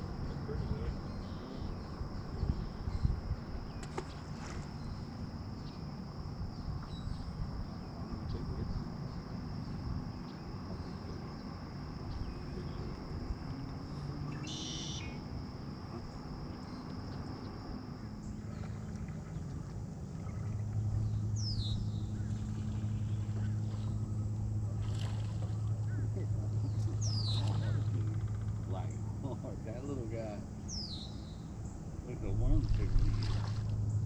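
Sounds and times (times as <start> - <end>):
low rumbling haze: 0.0 - 34.0
high-pitched insect drone: 4.8 - 18.5.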